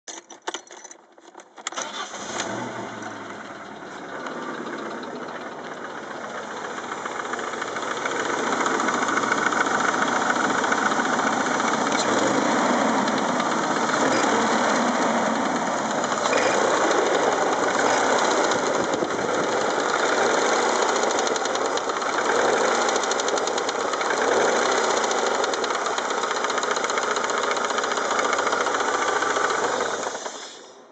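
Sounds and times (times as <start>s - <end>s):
car engine running: 1.8s - 30.2s
engine knocking: 3.3s - 30.4s.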